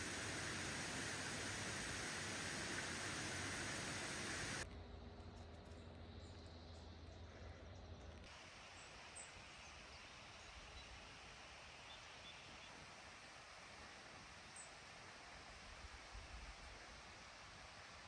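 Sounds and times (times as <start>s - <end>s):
steady hiss: 0.0s - 4.6s.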